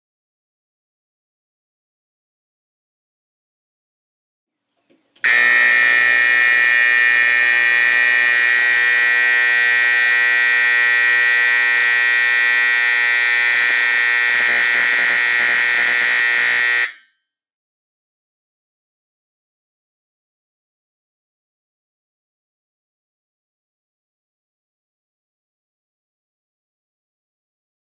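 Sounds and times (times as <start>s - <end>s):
fire alarm horn buzzing: 5.2s - 17.1s.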